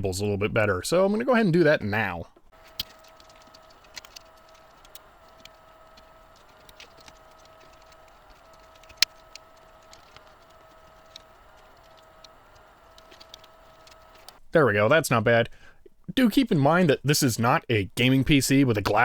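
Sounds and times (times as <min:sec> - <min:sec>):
plastic connectors clicking: 0:02.6 - 0:14.4.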